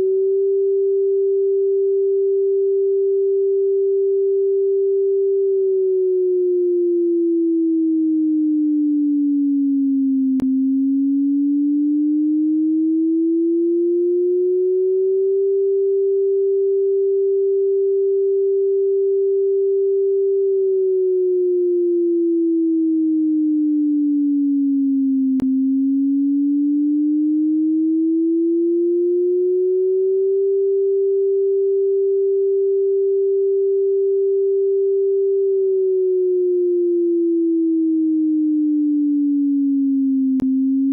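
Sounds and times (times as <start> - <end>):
warning siren sliding tone: 5.9 - 15.3, 20.8 - 30.4, 35.6 - 40.9.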